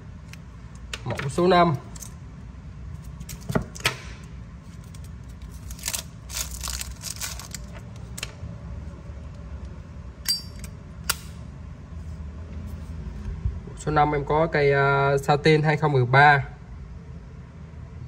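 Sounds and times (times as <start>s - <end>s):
lighters metallic clicks and clinks: 10.2s - 11.4s.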